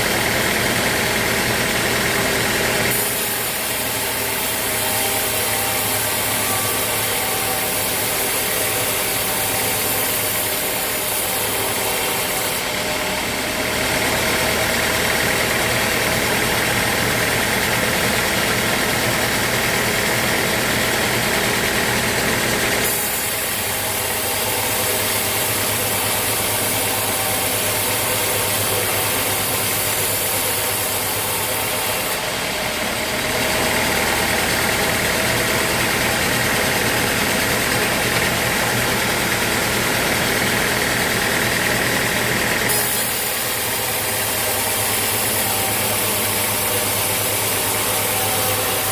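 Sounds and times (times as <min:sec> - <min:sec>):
sawmill machinery humming: 0:00.0 - 0:48.9.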